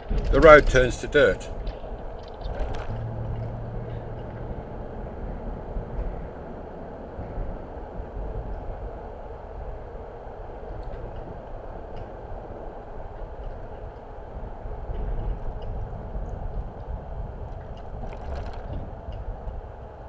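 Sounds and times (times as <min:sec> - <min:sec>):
car driving on dirt road: 0:00.0 - 0:20.0.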